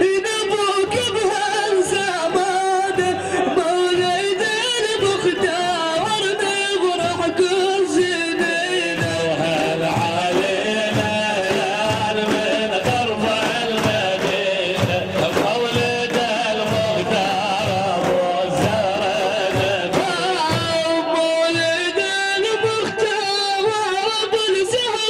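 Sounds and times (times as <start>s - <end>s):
hand drums beating: 3.9s - 23.0s.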